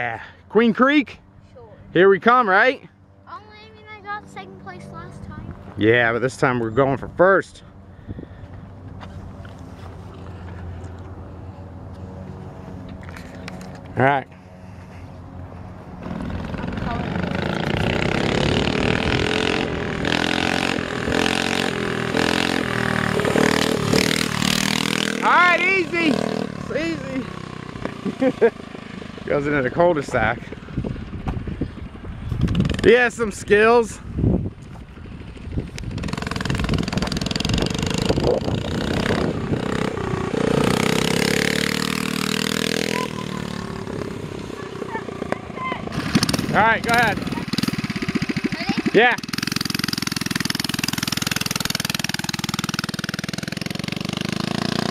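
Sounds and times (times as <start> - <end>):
small engine revving: 13.0 - 31.2, 35.1 - 54.9.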